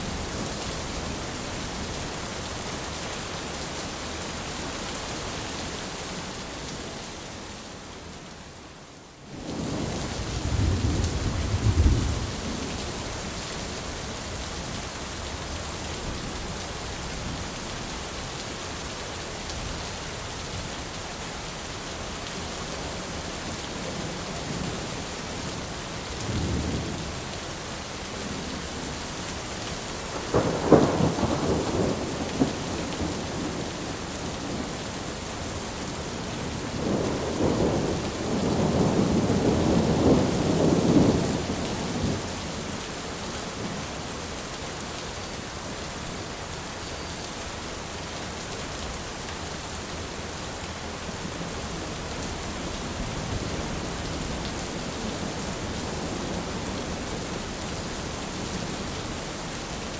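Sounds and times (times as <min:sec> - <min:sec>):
heavy rain: 0:00.0 - 0:59.9
thunder rumbling: 0:09.5 - 0:12.8, 0:30.1 - 0:33.7, 0:36.5 - 0:42.2.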